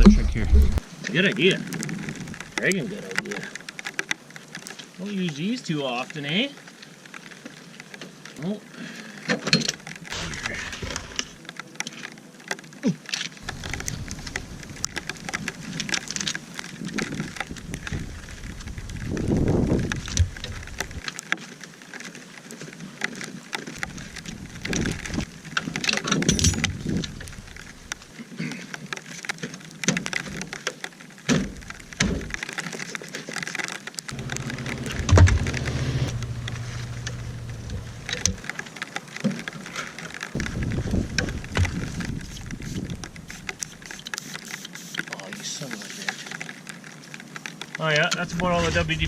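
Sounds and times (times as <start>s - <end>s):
tire being handled: 34.1s - 38.6s, 40.4s - 44.9s
aerosol can spraying: 42.6s - 45.0s.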